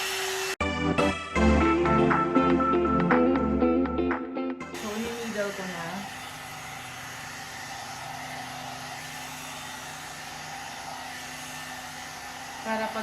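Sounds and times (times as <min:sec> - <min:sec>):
hair dryer running: 0:00.0 - 0:00.6, 0:04.6 - 0:13.0.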